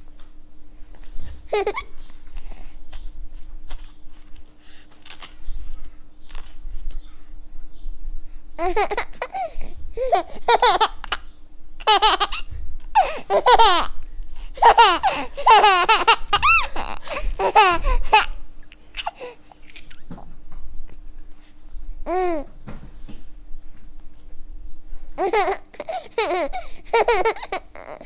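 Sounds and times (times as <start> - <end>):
baby laughing: 1.5 - 2.6, 8.6 - 14.0, 14.6 - 20.1, 22.1 - 22.5, 25.2 - 28.0.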